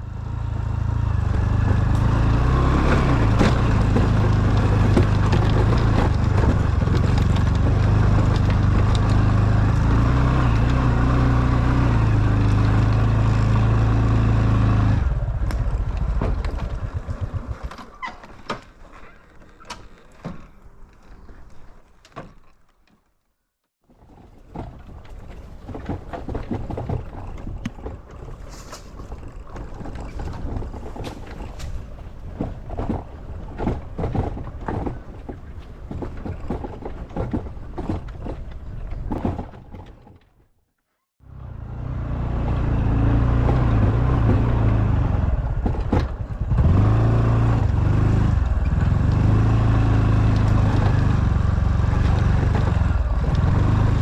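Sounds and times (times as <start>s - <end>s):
small motorcycle engine running: 0.0s - 18.1s, 41.2s - 54.0s
knocking and rattling: 1.6s - 9.9s.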